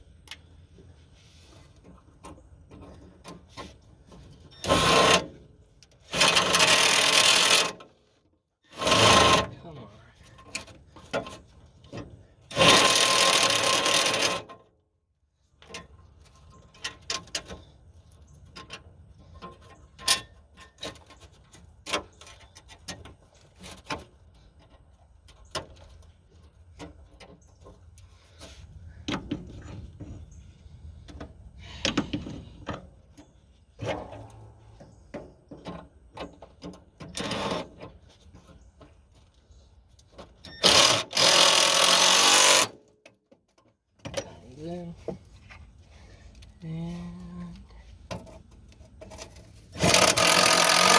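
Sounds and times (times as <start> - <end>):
metal panels and screws rattling: 6.0 - 7.8, 10.3 - 14.6, 33.8 - 39.0, 40.1 - 42.8, 48.1 - 50.9
power drill running: 40.6 - 42.7, 49.8 - 50.9.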